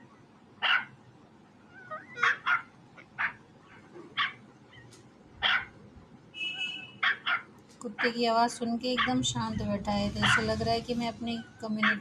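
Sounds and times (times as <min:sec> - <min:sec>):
dog yipping: 0:00.6 - 0:00.9, 0:01.7 - 0:03.4, 0:04.2 - 0:05.7, 0:07.0 - 0:07.5
dog whining: 0:01.7 - 0:02.6.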